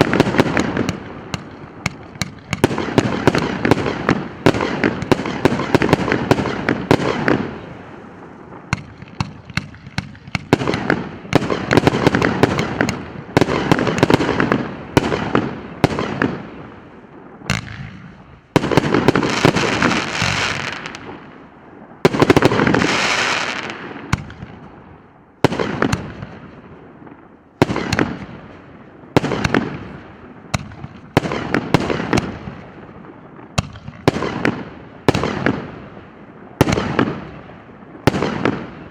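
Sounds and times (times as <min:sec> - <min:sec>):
fireworks launch thumps and bursts: 0:00.0 - 0:07.4, 0:08.7 - 0:13.0, 0:17.5 - 0:21.1
fireworks crackling: 0:00.0 - 0:38.9.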